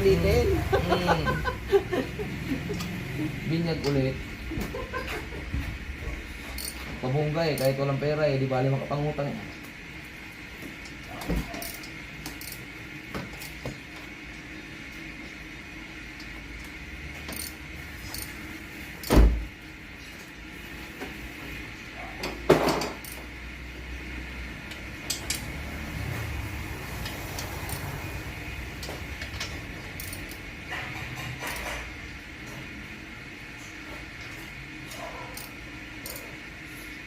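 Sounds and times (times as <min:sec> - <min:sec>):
steady low hum: 0:00.0 - 0:37.0
metal tools clattering: 0:29.2 - 0:31.9.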